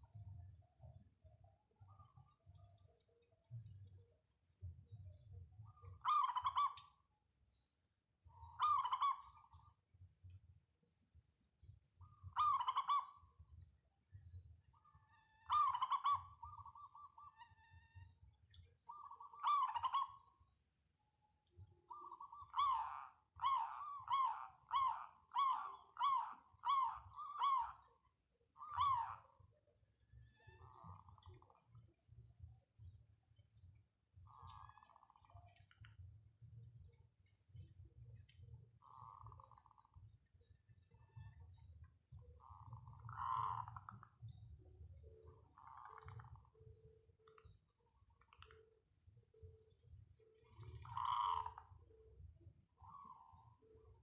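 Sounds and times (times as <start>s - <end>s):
dove cooing: 6.0s - 6.9s, 8.5s - 9.5s, 12.3s - 13.2s, 15.4s - 17.3s, 18.9s - 20.3s, 21.9s - 27.9s, 28.6s - 29.3s, 42.4s - 44.2s, 50.4s - 51.9s, 52.8s - 53.4s.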